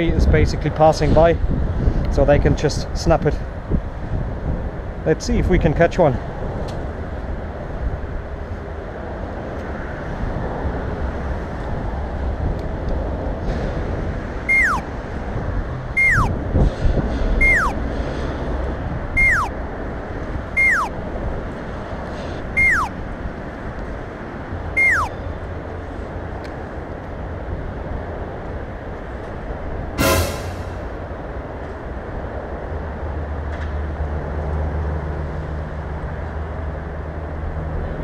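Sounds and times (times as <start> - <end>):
low traffic rumble: 0.0 - 38.0
wind noise: 0.1 - 5.0, 10.1 - 21.8
short falling whistle: 14.5 - 14.9, 16.0 - 16.3, 17.4 - 17.8, 19.2 - 19.5, 20.6 - 20.9, 22.6 - 22.9, 24.8 - 25.2, 30.0 - 30.7.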